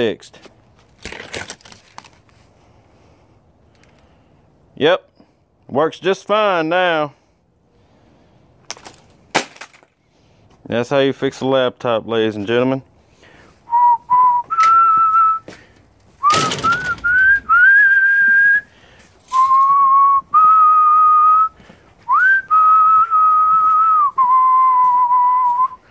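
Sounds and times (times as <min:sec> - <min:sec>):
person whistling a slow tune: 0:13.7 - 0:15.5, 0:16.2 - 0:18.7, 0:19.3 - 0:25.9.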